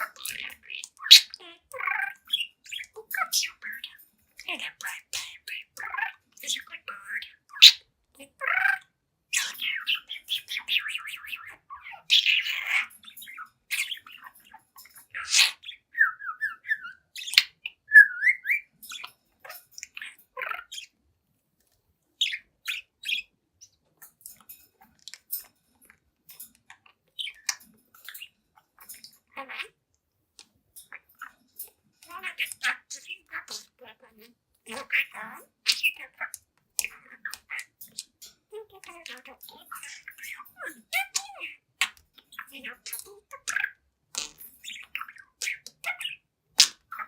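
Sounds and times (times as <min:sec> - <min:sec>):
budgerigar squawks: 0:00.0 - 0:01.8
budgerigar chattering: 0:00.0 - 0:20.9, 0:32.1 - 0:37.8, 0:38.6 - 0:47.0.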